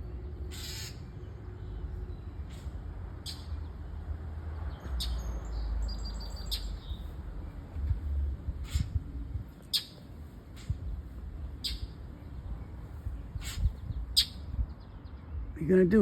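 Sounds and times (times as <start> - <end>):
bird chirping: 4.7 - 7.6, 9.6 - 10.0, 11.4 - 16.0.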